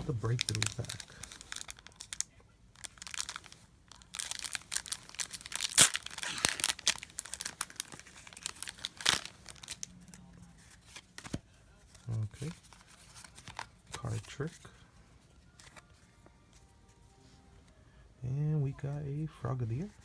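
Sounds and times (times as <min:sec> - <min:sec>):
foil wrapper crinkling and tearing: 0:00.0 - 0:14.7
foil sharp snaps: 0:05.2 - 0:07.1.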